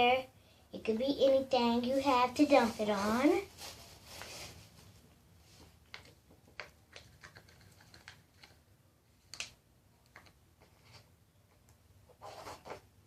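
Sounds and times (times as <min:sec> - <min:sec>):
faint clicks and taps: 0:05.6 - 0:08.6, 0:09.3 - 0:10.8.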